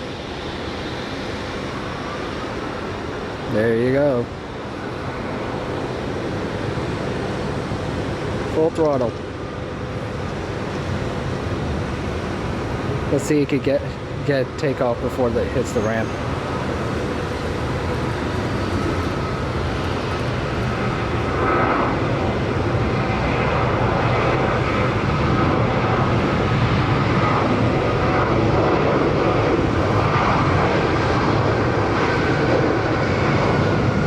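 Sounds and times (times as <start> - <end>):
faint jet whine: 0.0 - 34.0
jet engines at takeoff thrust: 0.0 - 34.0.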